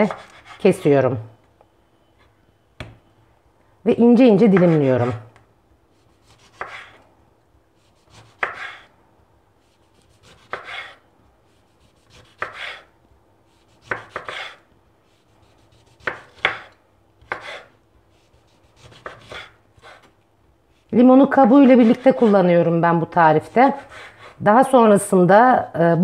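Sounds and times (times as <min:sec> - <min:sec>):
knife slicing lemon: 0:00.0 - 0:00.6, 0:04.5 - 0:05.2, 0:06.0 - 0:07.0, 0:07.8 - 0:08.9, 0:09.6 - 0:12.9, 0:13.5 - 0:20.1.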